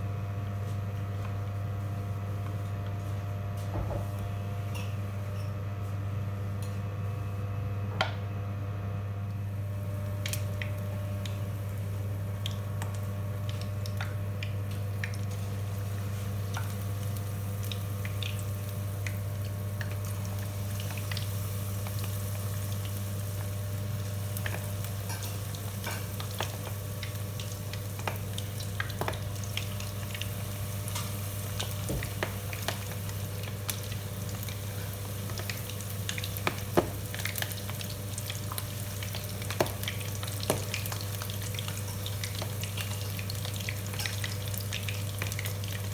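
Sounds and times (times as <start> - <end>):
constant low hum: 0.0 - 45.9
food sizzling in frying oil: 9.6 - 45.9.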